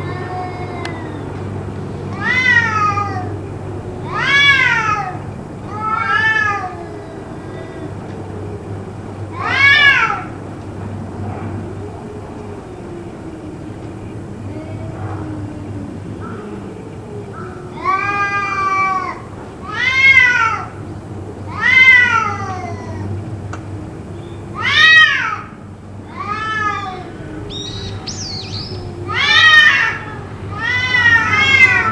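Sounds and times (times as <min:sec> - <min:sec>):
cat meowing loudly: 0:02.1 - 0:03.3, 0:04.1 - 0:06.8, 0:17.8 - 0:20.7, 0:21.5 - 0:22.8, 0:24.6 - 0:25.5, 0:26.2 - 0:31.9
low wavering call: 0:26.8 - 0:31.9.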